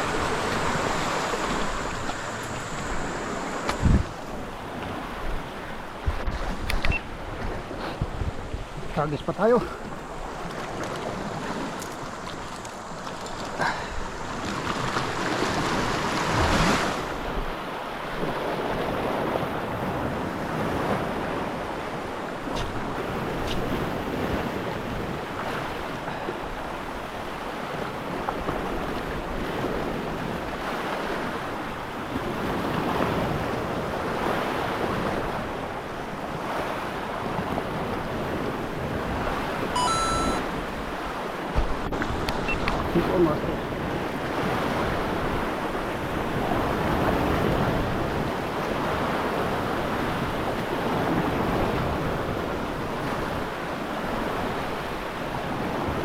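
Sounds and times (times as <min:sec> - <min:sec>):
wind on microphone: 0:00.0 - 0:09.1, 0:09.7 - 0:56.0
sea water washing around boat: 0:00.0 - 0:56.0.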